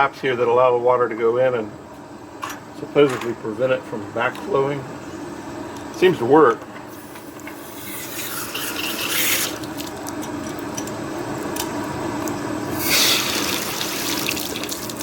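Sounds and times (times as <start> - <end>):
tap water running and splashing: 12.8 - 15.0.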